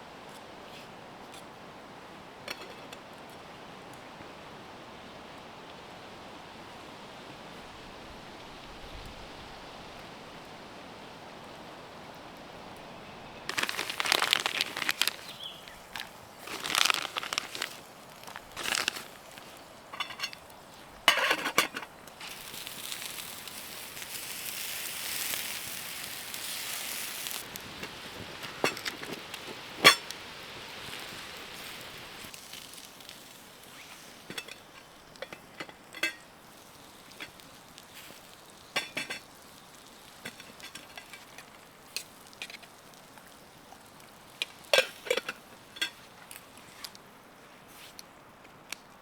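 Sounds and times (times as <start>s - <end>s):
food sizzling in a pan: 22.1s - 46.1s.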